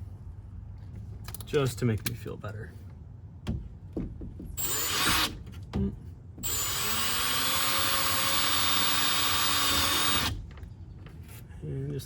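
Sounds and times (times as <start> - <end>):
power drill whining: 4.6 - 5.3, 6.4 - 10.4.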